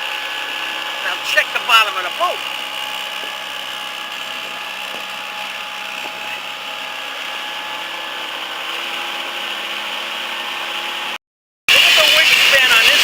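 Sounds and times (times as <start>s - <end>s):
motor droning with high whine: 0.0s - 13.0s.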